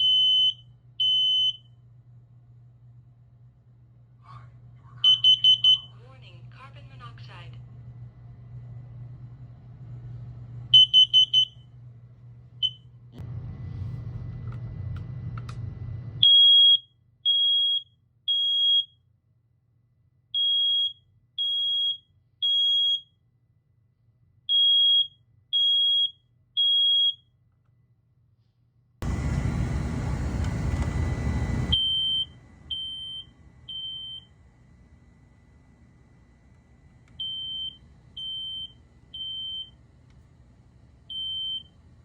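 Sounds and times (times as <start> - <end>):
smoke alarm beeping: 0.0 - 1.8, 5.0 - 6.0, 10.7 - 11.7, 12.6 - 12.9, 16.2 - 19.0, 20.4 - 23.2, 24.5 - 27.3, 31.3 - 34.3, 37.2 - 39.8, 41.1 - 41.8.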